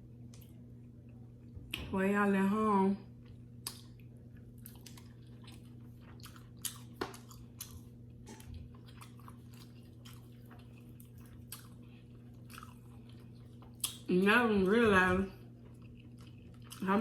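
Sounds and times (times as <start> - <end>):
chewing and biting food: 3.2 - 14.1, 15.4 - 17.0
wet mouth clicks and smacks: 3.6 - 4.1, 13.8 - 14.1.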